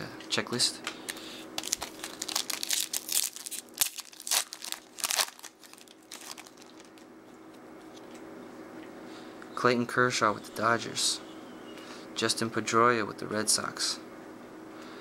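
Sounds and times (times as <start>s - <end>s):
wrapper crinkling and tearing: 1.1s - 7.0s.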